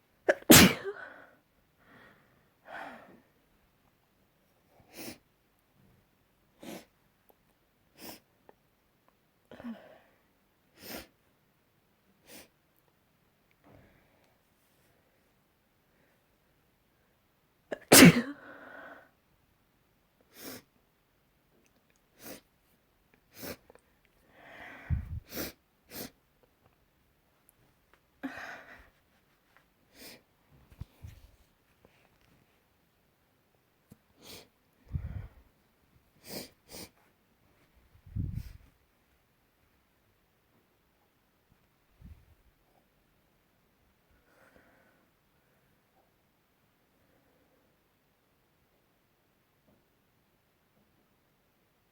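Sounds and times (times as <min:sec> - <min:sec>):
person sneezing: 0:00.3 - 0:01.2, 0:17.7 - 0:18.5.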